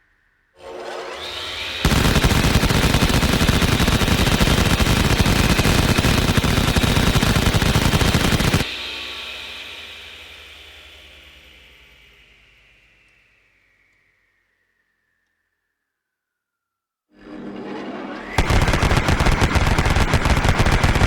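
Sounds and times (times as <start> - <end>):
whine: 0.0 - 16.1, 17.1 - 21.0
rotary cannon firing: 1.8 - 8.7, 18.4 - 21.0.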